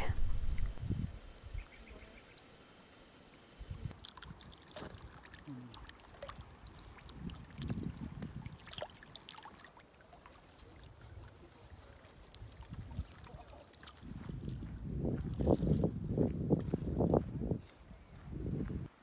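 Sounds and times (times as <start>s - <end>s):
small waves lapping: 3.3s - 14.6s
little splashes and clicks: 4.0s - 10.7s.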